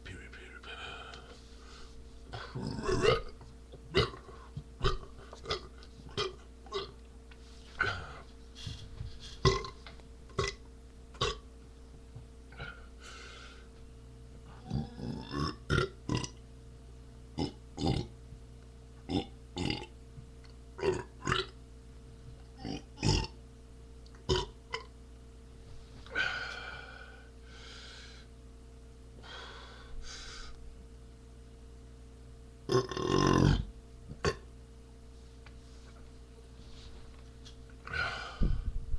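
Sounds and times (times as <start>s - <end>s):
man burping: 2.4s - 7.0s, 9.4s - 9.8s, 10.4s - 10.6s, 11.2s - 11.4s, 14.6s - 16.4s, 17.4s - 18.1s, 19.1s - 19.9s, 20.8s - 21.6s, 22.6s - 23.4s, 24.3s - 24.9s, 32.7s - 34.5s.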